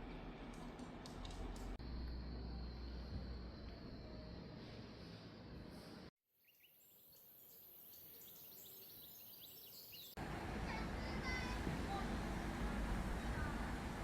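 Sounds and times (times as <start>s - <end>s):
small birds chirping: 6.4s - 10.2s.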